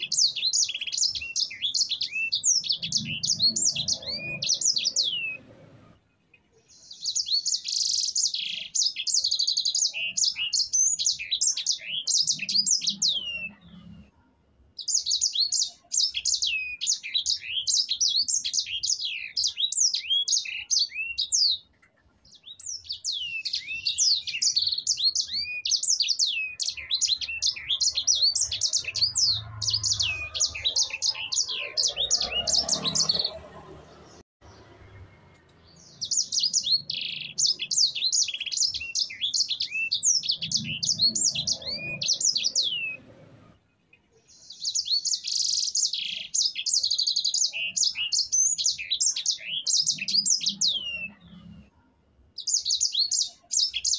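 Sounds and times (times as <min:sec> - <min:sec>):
finch singing: 0:00.0 - 0:05.9, 0:06.6 - 0:14.1, 0:14.8 - 0:43.2, 0:44.2 - 0:51.6, 0:52.4 - 0:53.9.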